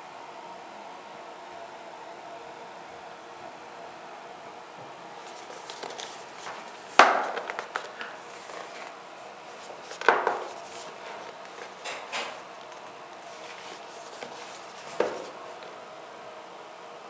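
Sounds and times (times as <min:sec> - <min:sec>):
packaging clicks and rustles: 0:05.2 - 0:15.7
packaging knocks: 0:05.3 - 0:08.9, 0:09.6 - 0:15.7.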